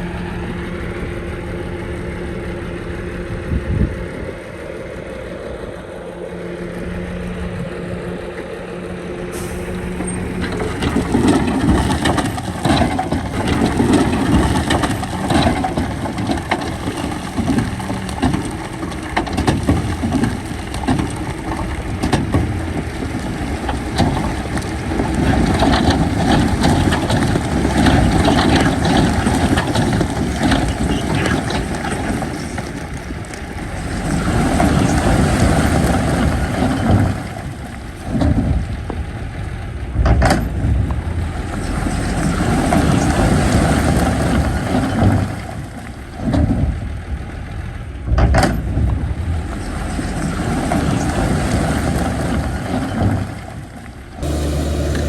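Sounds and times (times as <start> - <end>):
heavy diesel machinery engine: 0.0 - 55.0
clatter and crunching: 9.4 - 55.0.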